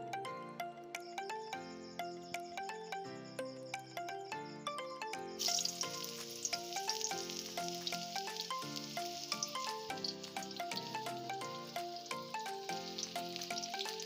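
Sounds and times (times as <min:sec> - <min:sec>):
plucked background music: 0:00.0 - 0:14.0
food sizzling in hot oil: 0:05.4 - 0:14.0.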